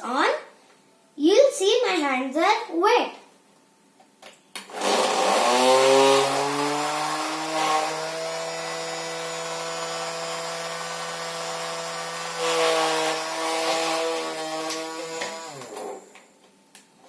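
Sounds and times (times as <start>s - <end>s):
small motor whining: 4.7s - 16.1s.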